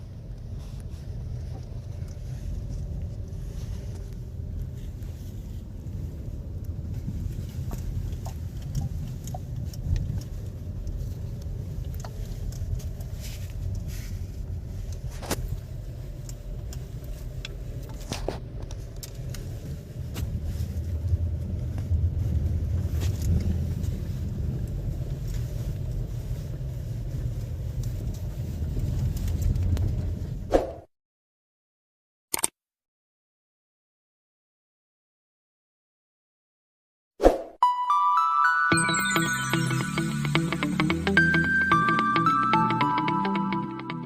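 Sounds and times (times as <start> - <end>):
road rumble inside car: 0.0 - 30.5.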